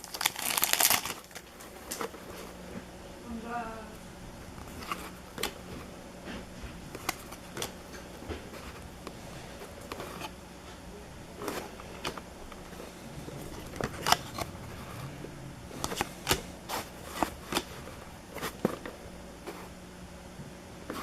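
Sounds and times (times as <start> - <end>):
foil wrappers crinkling and tearing: 0.0 - 2.6
cards sliding and flicking: 15.8 - 19.7.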